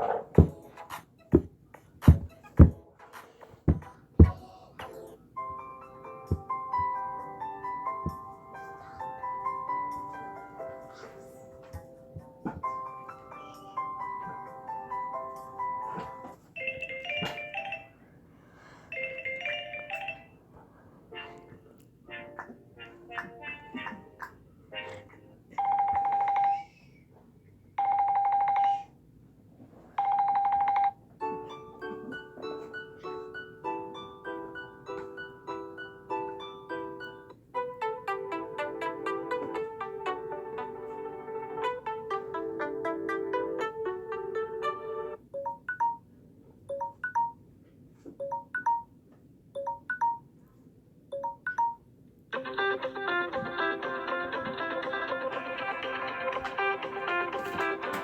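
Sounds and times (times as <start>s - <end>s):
brass-like ringtone: 16.6s - 18.0s, 18.9s - 20.4s
buzzing telephone bell ringtone: 16.6s - 18.0s, 18.9s - 20.4s, 25.6s - 26.7s, 27.8s - 28.9s, 30.0s - 31.0s
guitar ringtone: 16.6s - 18.0s, 18.9s - 20.4s, 51.2s - 57.2s
melodic ringtone: 16.6s - 18.0s, 18.9s - 20.4s, 30.0s - 46.0s, 46.7s - 47.4s, 48.2s - 48.9s, 49.6s - 50.3s, 51.2s - 57.9s.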